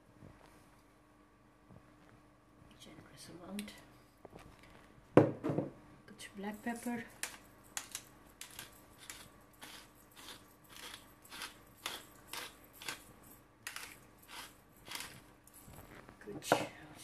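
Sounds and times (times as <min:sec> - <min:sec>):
pepper mill grinding: 0:06.6 - 0:15.6.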